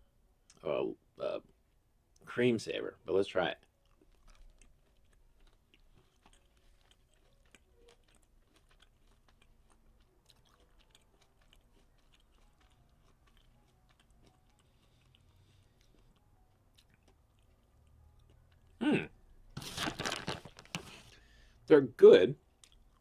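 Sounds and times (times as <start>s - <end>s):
faint chewing with mouth clicks: 1.4s - 2.3s, 3.4s - 19.5s, 22.4s - 23.0s.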